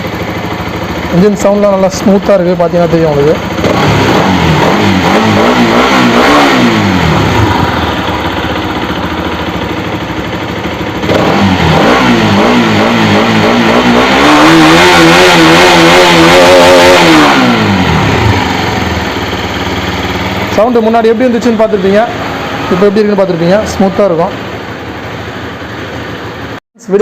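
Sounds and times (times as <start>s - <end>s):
motorcycle engine revving: 0.0s - 27.0s.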